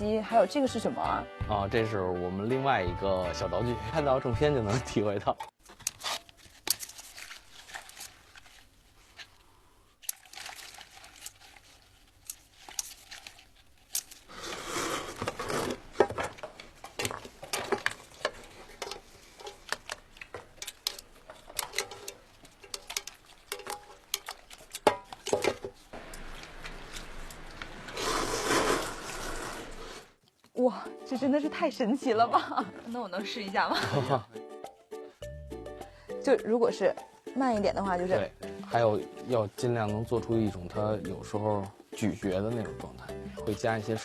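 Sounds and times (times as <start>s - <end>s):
wet paper squelching and crinkling: 5.6s - 30.5s.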